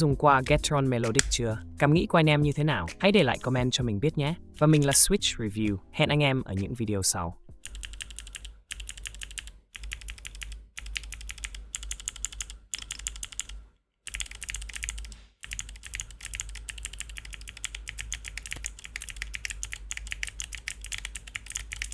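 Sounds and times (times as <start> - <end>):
clicky mechanical keyboard typing: 2.4 - 3.4, 4.6 - 5.0, 7.6 - 21.9.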